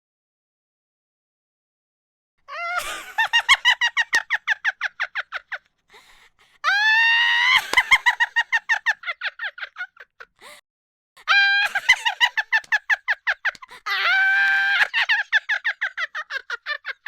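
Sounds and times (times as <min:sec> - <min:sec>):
person laughing shrilly: 0:02.5 - 0:05.6, 0:06.7 - 0:10.6, 0:11.2 - 0:17.0.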